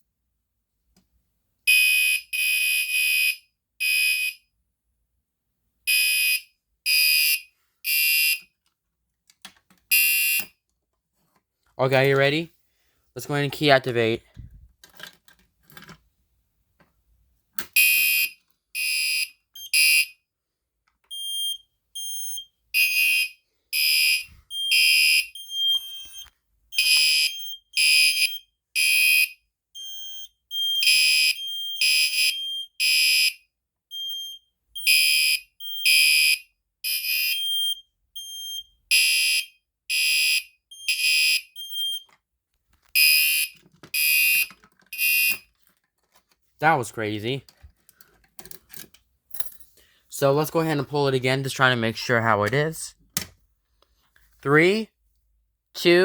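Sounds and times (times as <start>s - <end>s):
fire alarm pulsed blasts: 1.7s - 4.4s, 5.9s - 8.4s, 9.9s - 10.5s, 17.8s - 20.2s, 21.1s - 42.1s, 43.0s - 45.4s.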